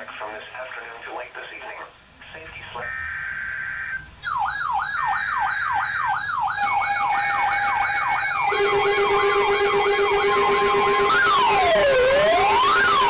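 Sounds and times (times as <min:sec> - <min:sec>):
electronic yelp siren: 0:02.8 - 0:13.0
steady electronic tones: 0:02.8 - 0:13.0.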